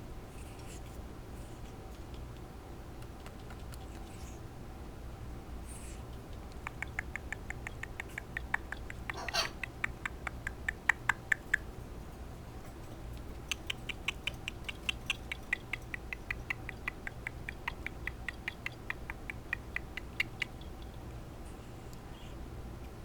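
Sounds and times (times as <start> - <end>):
parrot clicking rapidly: 6.2 - 11.8, 13.2 - 21.0.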